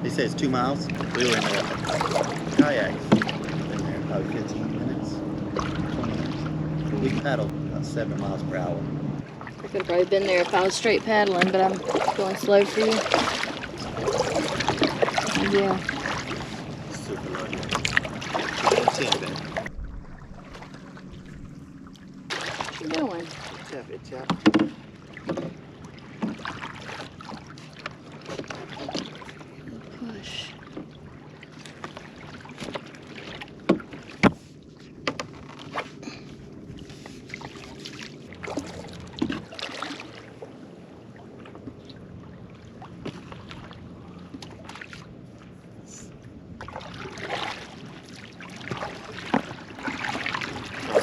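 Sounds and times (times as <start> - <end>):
faint low hum: 0.0 - 10.6
paddles splashing through water: 0.0 - 45.8, 46.5 - 51.0
paddle knocking against boat: 1.0 - 3.8, 24.2 - 29.4, 31.7 - 35.8, 37.3 - 39.7, 48.6 - 51.0.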